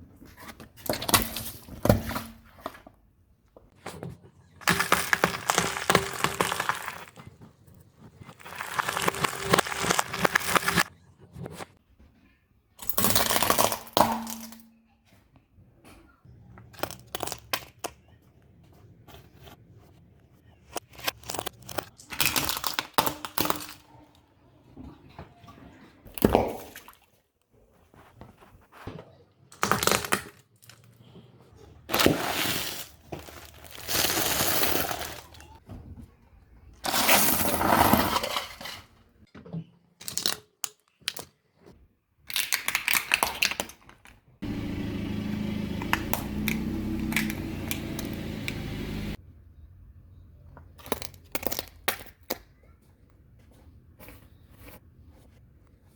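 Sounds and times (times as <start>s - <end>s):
objects crunching under car tyre: 8.2s - 10.9s, 31.9s - 35.5s, 44.4s - 49.2s.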